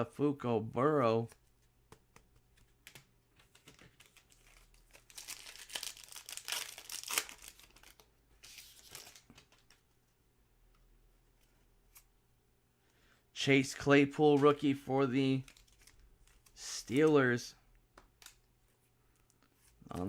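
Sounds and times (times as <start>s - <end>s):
foil wrapper tearing and crinkling: 4.1s - 8.0s.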